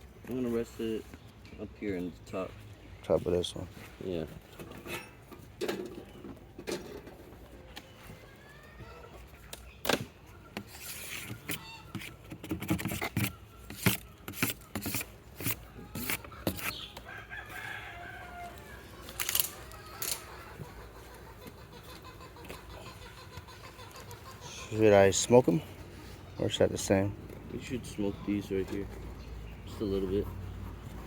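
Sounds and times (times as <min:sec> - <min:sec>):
chickens clucking: 0:04.6 - 0:31.0
rooster crowing: 0:17.0 - 0:20.4.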